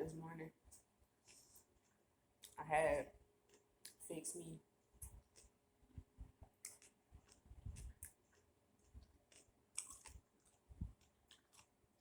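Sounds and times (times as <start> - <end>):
person chewing food: 4.9 - 12.0.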